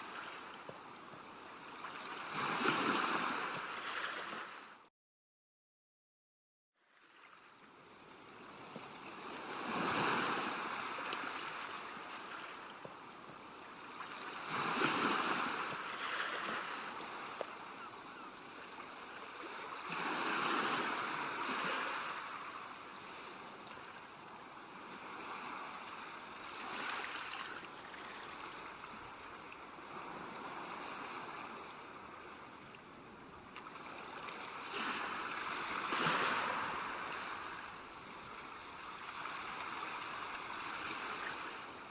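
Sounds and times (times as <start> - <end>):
ocean waves crashing: 33.9 - 37.8.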